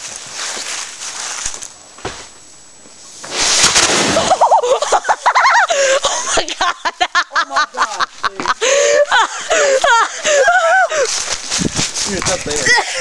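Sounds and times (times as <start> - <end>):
firework blast: 3.2 - 4.6
children shrieking and laughing: 4.2 - 7.5, 8.6 - 11.3.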